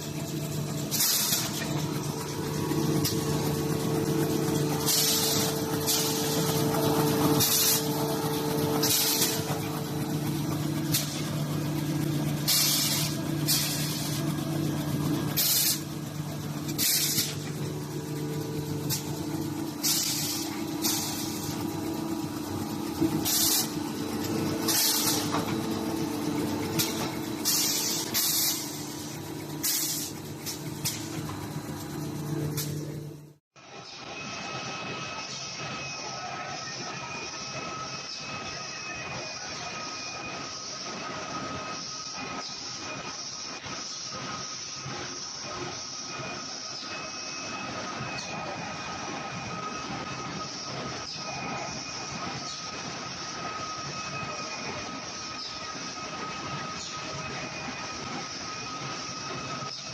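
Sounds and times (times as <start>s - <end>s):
packing machine humming: 0.0s - 33.4s.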